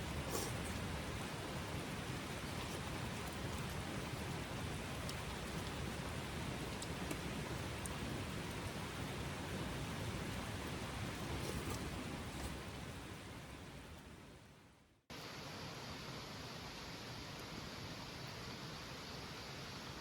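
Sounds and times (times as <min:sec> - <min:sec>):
raindrop ticks: 0:00.0 - 0:14.1
rain falling: 0:00.0 - 0:20.0.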